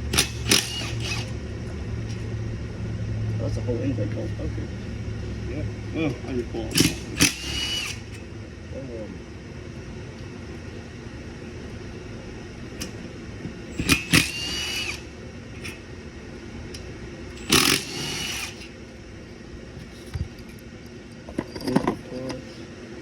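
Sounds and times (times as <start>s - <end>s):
power driver whining: 0.0s - 2.2s, 6.0s - 8.3s, 12.7s - 15.9s, 16.7s - 19.0s
low steady hum: 0.0s - 23.0s.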